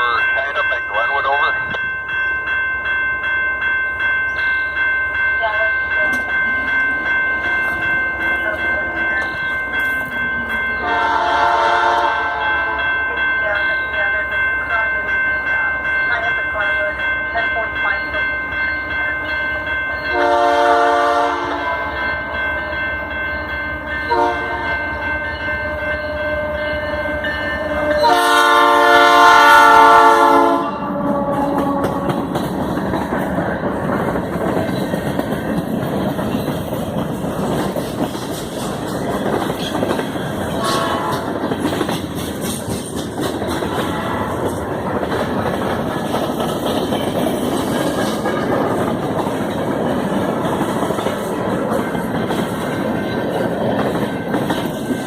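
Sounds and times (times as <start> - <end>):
locomotive air horn blasts: 10.8 - 12.9, 20.1 - 21.9, 24.1 - 24.7, 27.7 - 32.2, 40.6 - 41.3
train wheels clattering over rail joints: 31.2 - 55.0.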